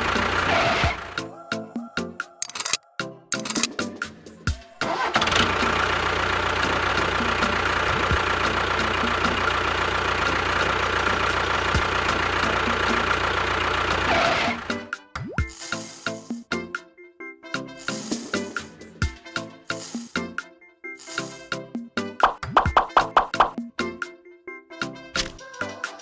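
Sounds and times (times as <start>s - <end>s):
background music: 0.0s - 6.0s, 14.6s - 26.0s.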